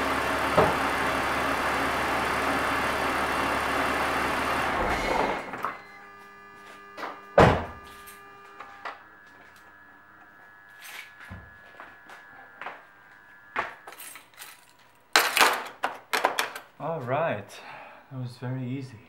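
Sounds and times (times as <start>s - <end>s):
car engine idling: 0.0s - 6.5s
loud thump: 7.4s - 7.8s.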